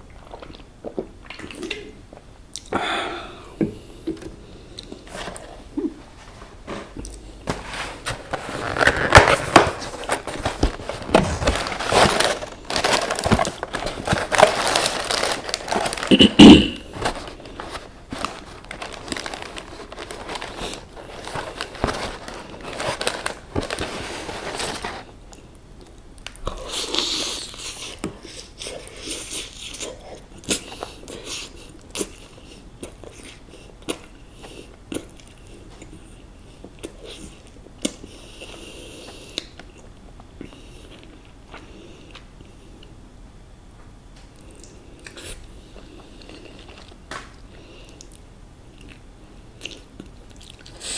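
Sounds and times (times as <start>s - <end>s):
crunchy chewing of fried chicken: 44.4s - 50.9s.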